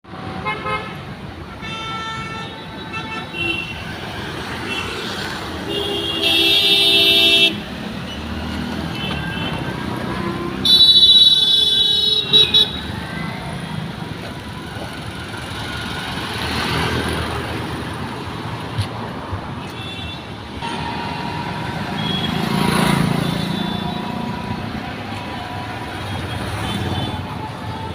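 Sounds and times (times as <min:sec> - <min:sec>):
road traffic: 0:00.0 - 0:27.9
vehicle horns honking: 0:05.6 - 0:12.9, 0:19.6 - 0:24.2.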